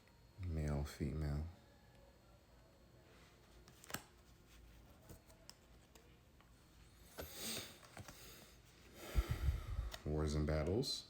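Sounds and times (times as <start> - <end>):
cards clicking: 3.6 - 4.2.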